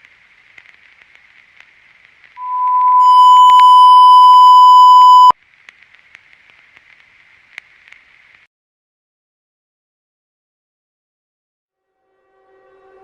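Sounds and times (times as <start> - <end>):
crackly static hiss: 0.0 - 8.5
broadcast test tone: 2.4 - 5.3.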